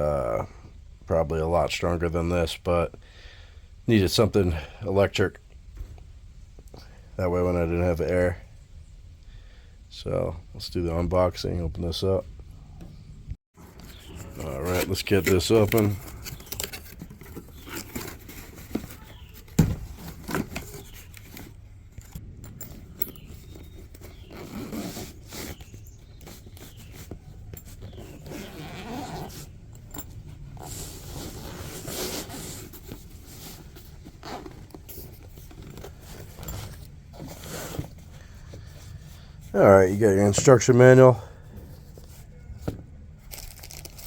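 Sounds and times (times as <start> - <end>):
packaging rustling: 13.6 - 22.2, 43.2 - 44.0
zipper opening: 23.0 - 38.4.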